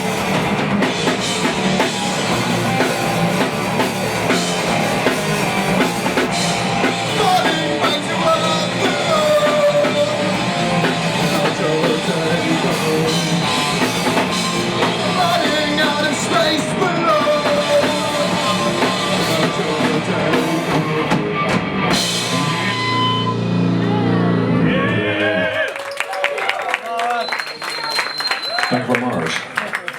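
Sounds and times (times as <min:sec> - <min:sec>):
drum kit: 0:00.0 - 0:24.1
guitar: 0:00.0 - 0:25.6
person singing: 0:06.9 - 0:21.2.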